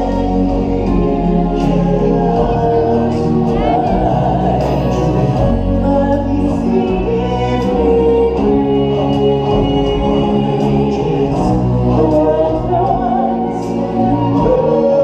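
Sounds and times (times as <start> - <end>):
steady musical accompaniment: 0.0 - 15.0.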